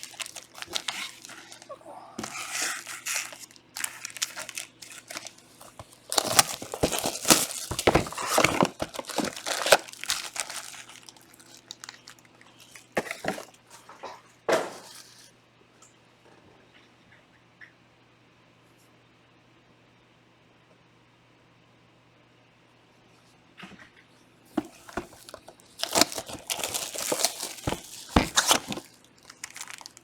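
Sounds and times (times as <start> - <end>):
plastic wrap crinkling and tearing: 0.0 - 13.6, 24.6 - 30.0
faint steady hum: 0.0 - 30.0.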